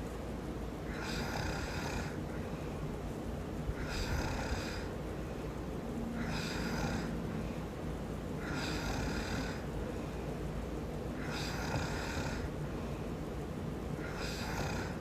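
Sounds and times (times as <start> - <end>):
steady low hum: 0.0 - 15.0
man snoring: 0.9 - 2.2, 3.8 - 4.9, 6.2 - 7.2, 8.4 - 9.7, 11.2 - 12.5, 14.0 - 15.0.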